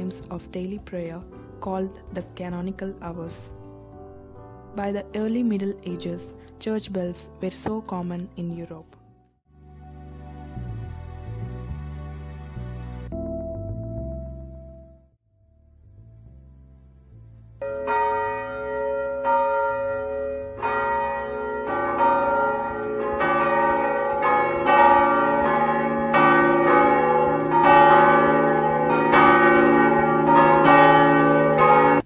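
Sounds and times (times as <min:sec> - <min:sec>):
church bells ringing: 0:17.6 - 0:32.0
deeper bell ringing: 0:17.6 - 0:32.0.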